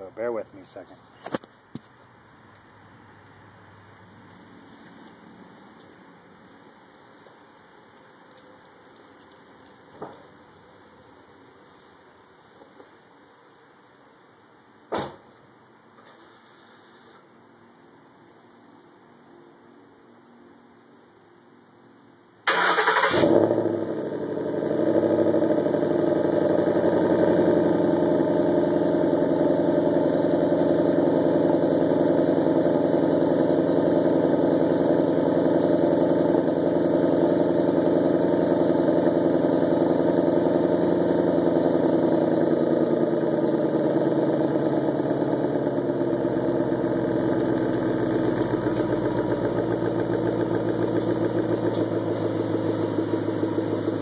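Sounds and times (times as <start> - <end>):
car engine starting and idling: 22.4 - 54.0.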